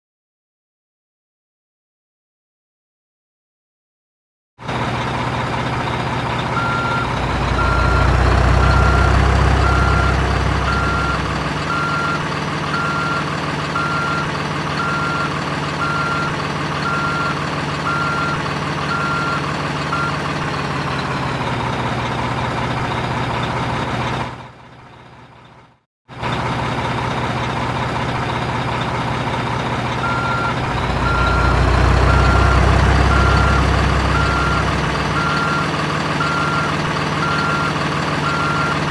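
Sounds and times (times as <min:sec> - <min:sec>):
diesel truck engine running: 0:04.6 - 0:38.9
reversing alarm beeping: 0:06.6 - 0:20.2, 0:30.0 - 0:38.8.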